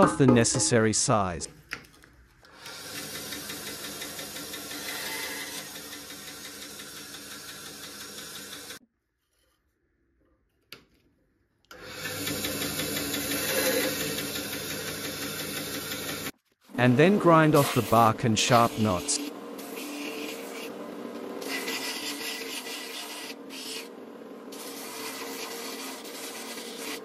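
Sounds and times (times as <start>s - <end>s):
electric saw cutting branch: 2.5s - 8.8s, 11.7s - 27.0s.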